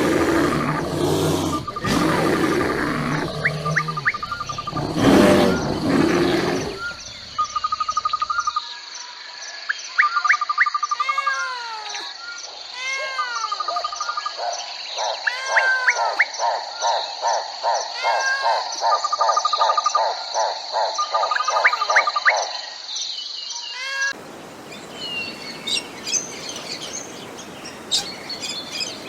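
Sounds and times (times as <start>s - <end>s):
animal roar: 0.0s - 7.3s
bird chirp calls: 0.3s - 8.6s, 10.0s - 22.5s, 23.6s - 29.0s.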